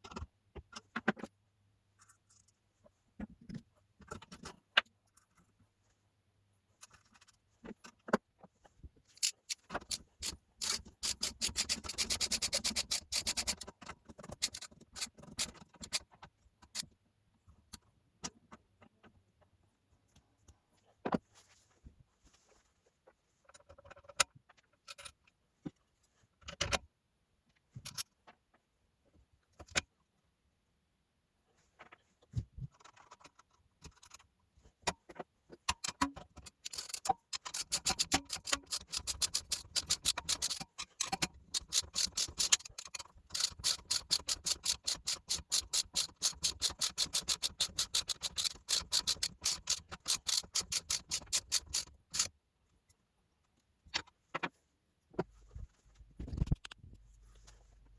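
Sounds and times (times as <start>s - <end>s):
mechanical clicks and knocks: 9.1s - 16.8s, 34.8s - 52.3s
fast even clicking: 36.7s - 52.3s.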